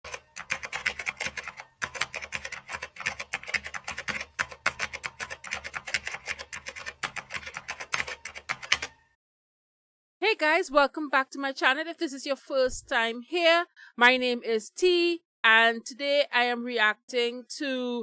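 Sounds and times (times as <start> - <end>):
keyboard typing: 0.0 - 9.1.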